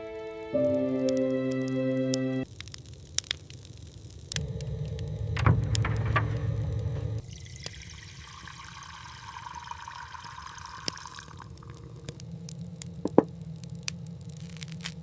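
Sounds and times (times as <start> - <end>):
drips: 7.2 - 12.2
liquid pouring: 7.2 - 12.2.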